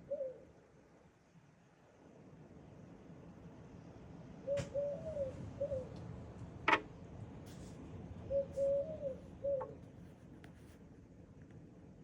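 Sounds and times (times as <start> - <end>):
dove cooing: 0.0 - 0.4, 4.5 - 5.9, 8.3 - 9.8.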